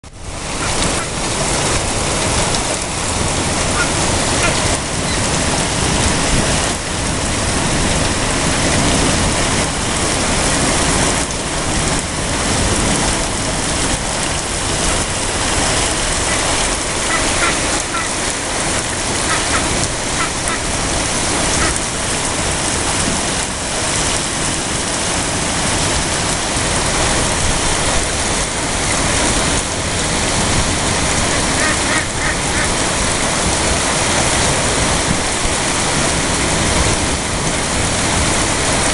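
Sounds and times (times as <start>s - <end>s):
heavy rain pouring: 0.0s - 38.9s
faint duck calls: 0.6s - 1.2s, 3.7s - 5.2s, 17.1s - 18.2s, 31.3s - 32.7s.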